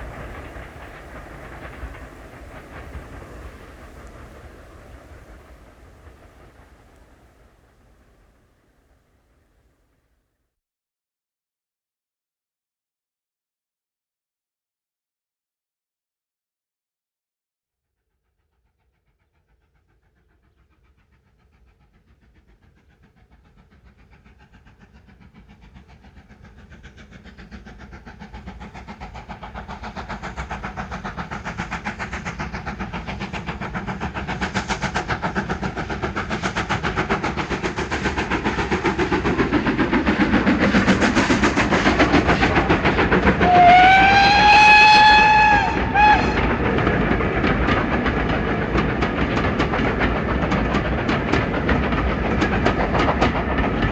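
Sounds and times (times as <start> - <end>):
steam train running: 0.0 - 9.7, 18.3 - 53.9
steam whistle: 43.2 - 46.7.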